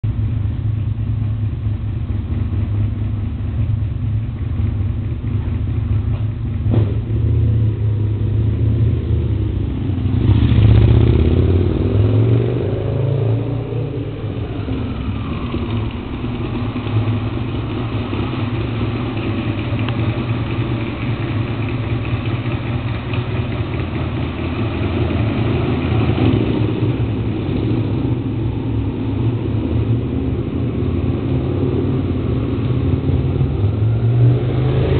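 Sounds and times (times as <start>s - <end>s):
motorcycle engine idling: 0.0s - 10.2s, 14.0s - 31.0s
engine revving: 6.6s - 34.9s.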